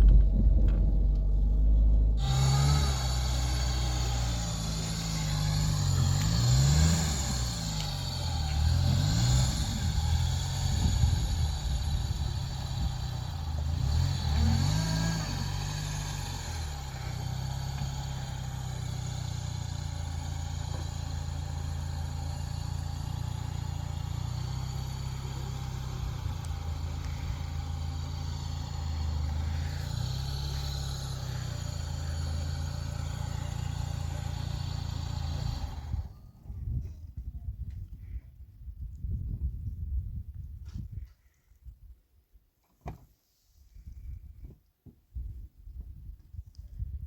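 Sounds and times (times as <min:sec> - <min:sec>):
vehicle engine running and revving: 0:00.0 - 0:36.2.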